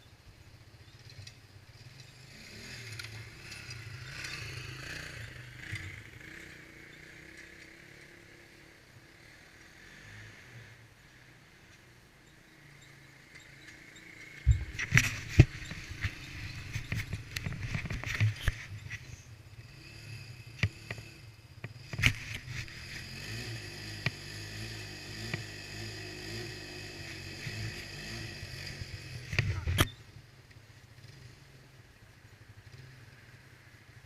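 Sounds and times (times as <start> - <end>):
atv engine running: 0.0 - 34.0
sharp knocks and rattles: 13.3 - 19.2.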